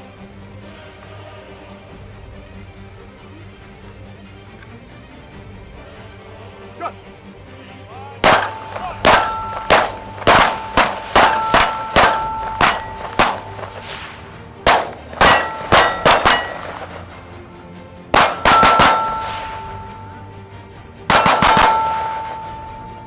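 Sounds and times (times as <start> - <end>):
steel targets ringing: 8.2 - 14.0, 14.7 - 17.2, 18.2 - 20.5, 21.1 - 23.0
gunshots: 8.2 - 17.2, 18.2 - 20.2, 21.1 - 22.9.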